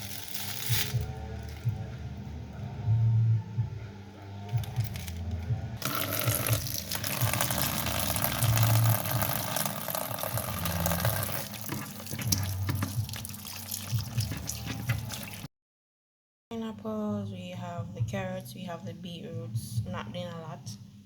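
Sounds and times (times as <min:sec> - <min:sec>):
tap water running into sink: 0:05.8 - 0:15.5.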